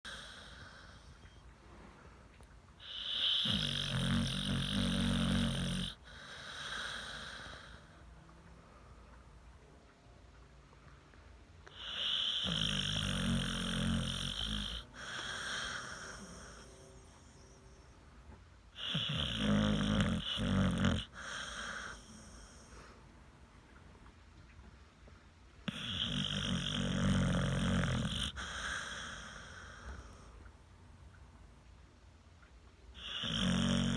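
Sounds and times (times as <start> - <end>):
quiet breathing: 0.0 - 9.9, 10.6 - 31.2
loud rattling snore: 2.9 - 7.8, 11.8 - 16.8, 18.8 - 22.0, 25.7 - 29.6, 33.0 - 33.9
soft breathing: 14.8 - 19.0, 21.0 - 23.8, 28.3 - 30.7.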